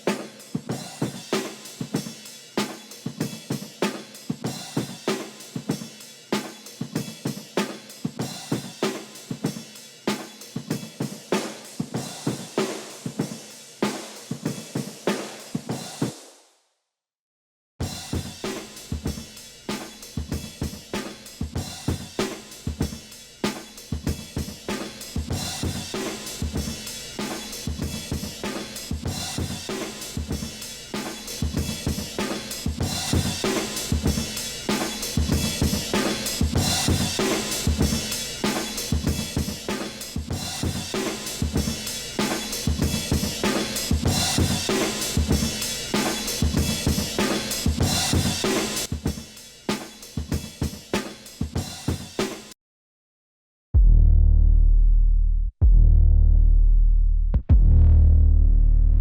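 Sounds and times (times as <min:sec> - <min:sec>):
electronic drum loop: 0:18.1 - 0:49.3, 0:50.1 - 0:52.4.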